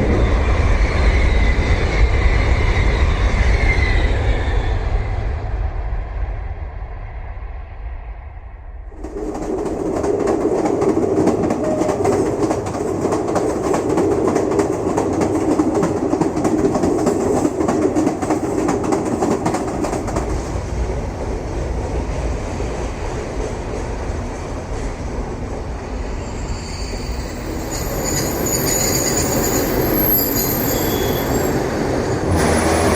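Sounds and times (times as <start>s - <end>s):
train rumbling on rails: 0.0s - 32.9s.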